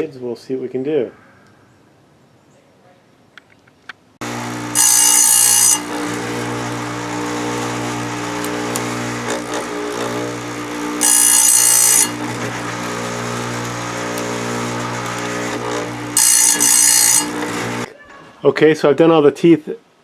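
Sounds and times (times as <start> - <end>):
grinding wheel on chain: 4.2 - 17.9
sharpener motor humming: 4.2 - 17.9.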